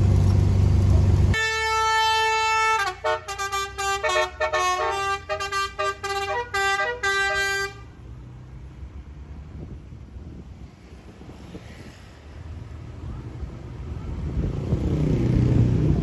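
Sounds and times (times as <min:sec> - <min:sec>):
minibus engine and road rumble: 0:00.0 - 0:16.0
multi-tone horn playing a tune: 0:01.4 - 0:07.8.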